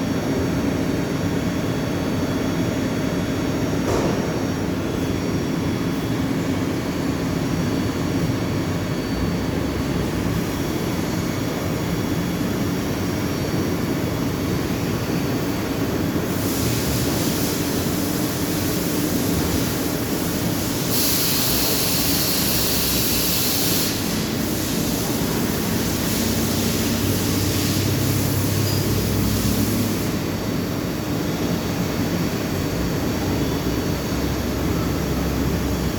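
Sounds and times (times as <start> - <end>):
hiss: 16.3 - 30.3.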